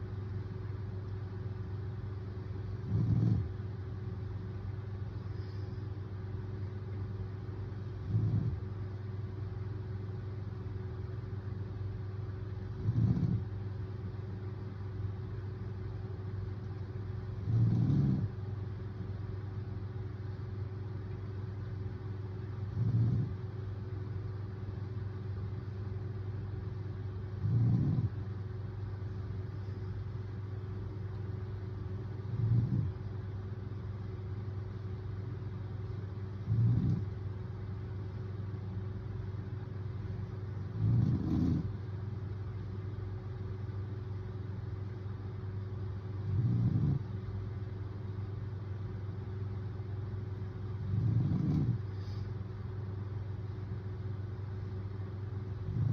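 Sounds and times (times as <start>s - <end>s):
man snoring: 2.8s - 3.5s, 12.8s - 13.4s, 17.4s - 18.3s, 27.4s - 28.2s, 32.3s - 32.9s, 40.8s - 41.7s, 50.8s - 51.8s.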